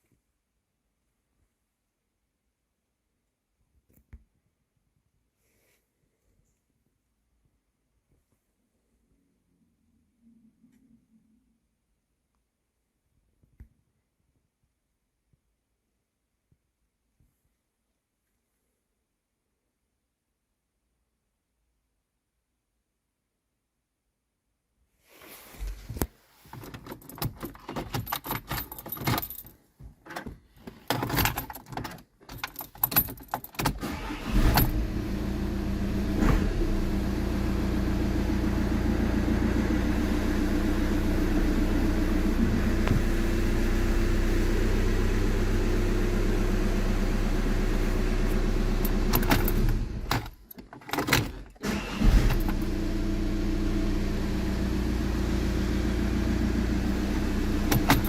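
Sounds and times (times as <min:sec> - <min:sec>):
diesel engine idling: 0:36.7 - 0:50.0.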